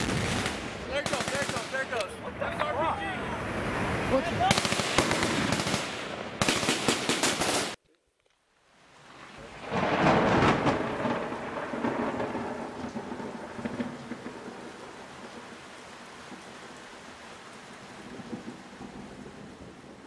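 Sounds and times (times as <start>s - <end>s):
gunfire burst: 0.0s - 1.9s, 4.5s - 7.8s
rain hiss: 0.0s - 7.8s, 8.4s - 20.0s
rolling thunderclap: 9.4s - 15.5s, 18.0s - 20.0s.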